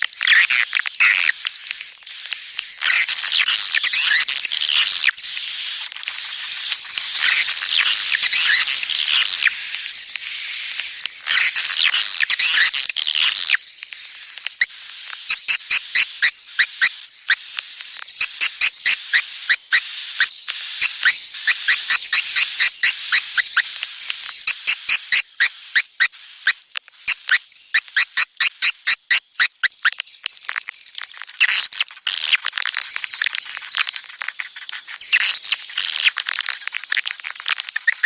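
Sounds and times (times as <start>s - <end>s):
sharp clicks: 0.1s - 38.0s
swiftlet twittering: 0.3s - 30.3s.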